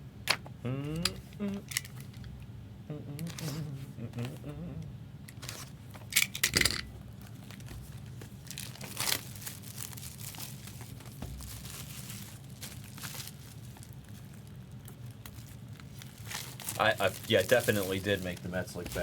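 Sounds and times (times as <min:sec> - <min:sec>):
foil wrappers crinkling and tearing: 0:07.0 - 0:19.0.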